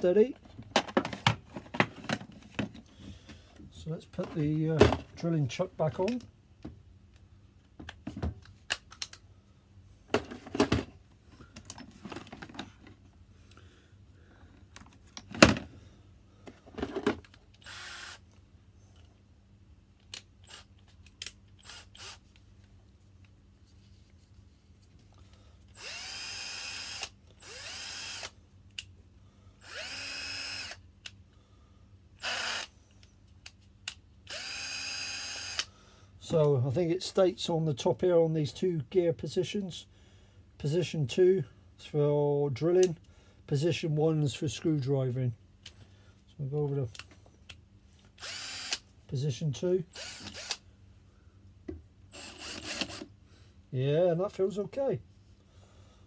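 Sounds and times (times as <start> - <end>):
cordless drill whining: 17.6 - 18.2, 21.6 - 22.2, 25.7 - 28.4, 29.6 - 30.8, 32.2 - 32.7, 34.3 - 35.7, 48.2 - 48.8, 49.9 - 50.6, 52.1 - 53.1.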